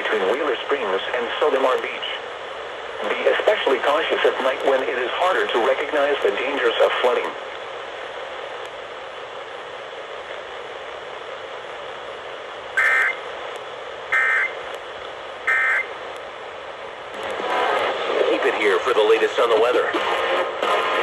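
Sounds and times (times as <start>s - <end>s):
radio hiss: 0.0s - 21.0s
warbling digital data bursts: 12.8s - 13.2s.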